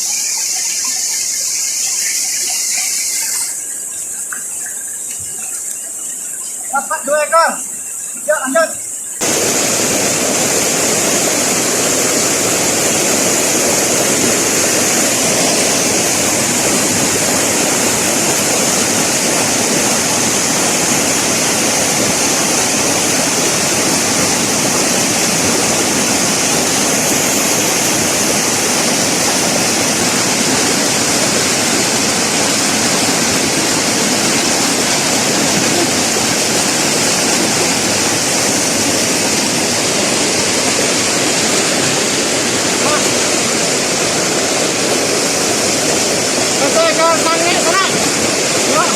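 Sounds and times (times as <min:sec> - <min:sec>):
river water rushing: 0:00.0 - 0:48.9.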